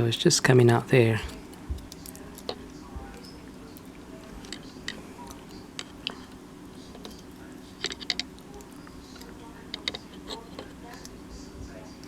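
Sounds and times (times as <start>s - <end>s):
steady low hum: 0.0s - 12.0s
small plastic parts clicking: 7.8s - 8.3s.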